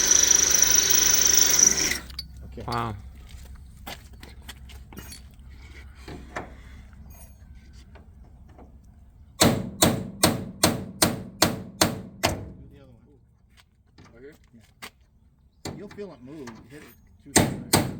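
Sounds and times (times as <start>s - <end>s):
hammer striking metal rivet: 17.4s - 17.9s.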